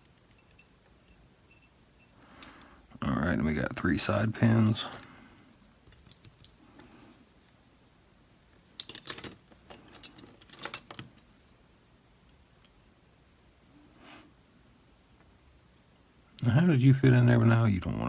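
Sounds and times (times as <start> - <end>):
small metal parts clinking: 0.2 - 2.7, 8.7 - 11.3
tools clicking and rattling: 8.8 - 11.3.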